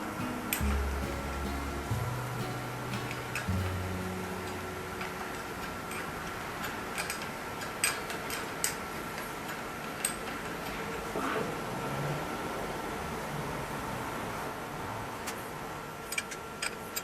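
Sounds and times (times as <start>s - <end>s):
faint high hum: 0.0s - 9.2s.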